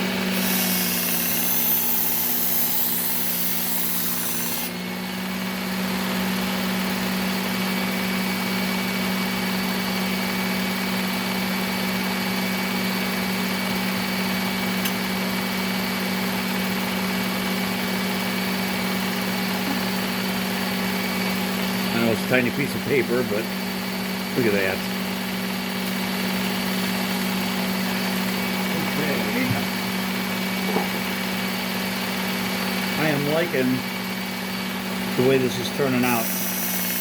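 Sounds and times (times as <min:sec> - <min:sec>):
belt sharpener motor humming: 0:00.0 - 0:06.0, 0:23.4 - 0:37.0.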